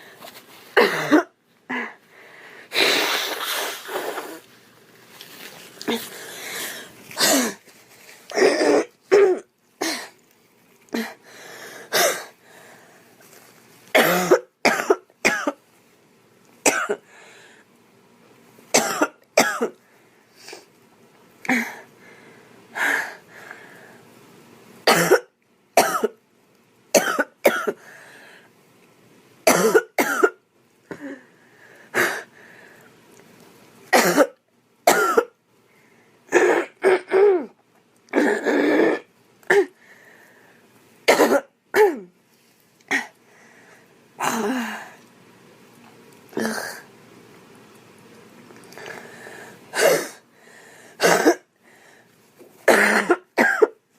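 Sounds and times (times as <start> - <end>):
girl coughing: 0.8 - 2.0, 7.2 - 7.6, 8.3 - 10.2, 11.9 - 12.4, 14.0 - 15.6, 16.7 - 17.0, 18.8 - 19.8, 24.9 - 26.2, 27.0 - 27.8, 29.5 - 30.4, 33.9 - 35.4, 36.3 - 37.6, 38.2 - 39.8, 41.1 - 42.1, 42.9 - 43.2, 44.2 - 44.8, 49.7 - 50.2, 51.0 - 51.5, 52.7 - 53.8.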